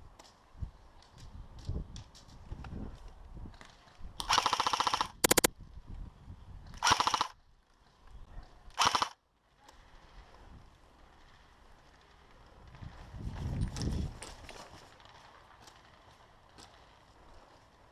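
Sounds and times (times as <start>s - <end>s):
airsoft rifle firing bursts: 4.2s - 5.5s, 6.8s - 7.4s, 8.8s - 9.2s.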